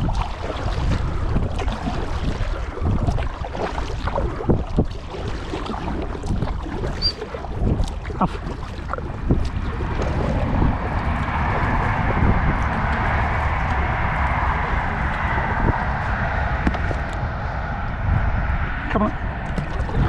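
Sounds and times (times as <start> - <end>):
paddle splashes: 0.0 - 17.2, 19.4 - 20.0
wind rumbling on microphone: 0.0 - 20.0.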